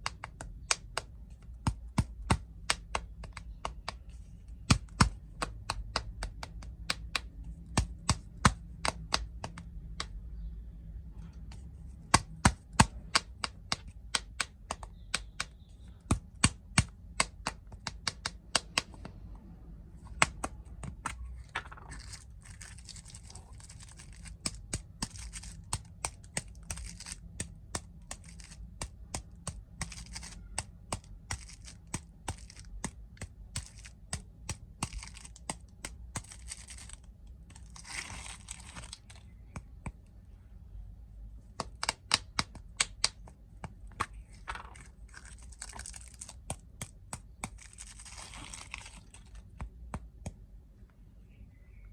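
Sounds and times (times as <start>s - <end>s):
sharp taps and clicks: 0.0s - 10.4s, 11.3s - 19.2s, 41.5s - 47.9s
plastic wrapper crinkling: 21.3s - 27.5s, 28.1s - 28.8s, 29.8s - 33.0s, 34.8s - 39.3s, 44.3s - 49.5s.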